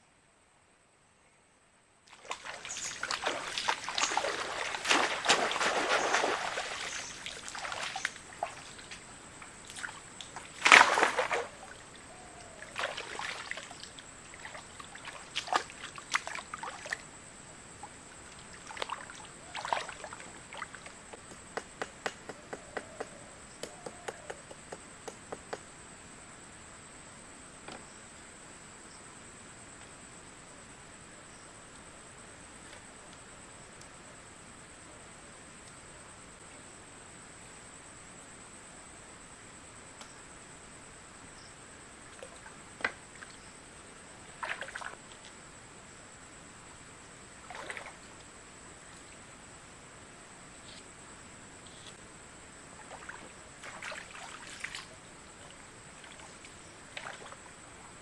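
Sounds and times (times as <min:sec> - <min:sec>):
water dripping: 0:02.1 - 0:11.6
water splashing and trickling: 0:02.1 - 0:17.2, 0:17.8 - 0:21.2, 0:44.2 - 0:45.4, 0:47.4 - 0:48.2, 0:52.7 - 0:57.8.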